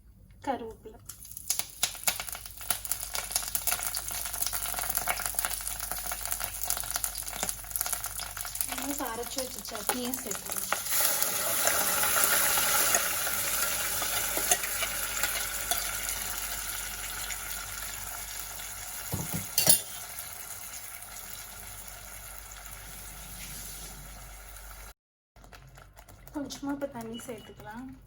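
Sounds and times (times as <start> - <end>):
paste sizzling in hot oil: 1.1 - 24.9
spoon knocking against pan: 19.1 - 20.0.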